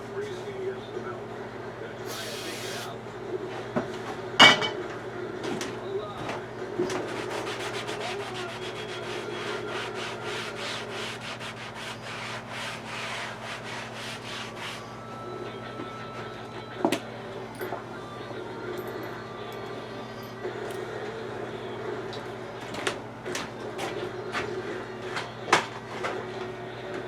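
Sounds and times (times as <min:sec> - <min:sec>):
hand sanding strokes: 0:02.1 - 0:02.9, 0:07.0 - 0:14.9.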